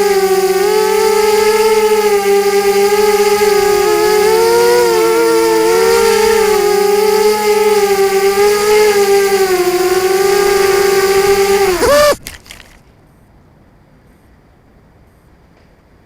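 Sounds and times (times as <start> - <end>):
drone motors whining: 0.0 - 12.8.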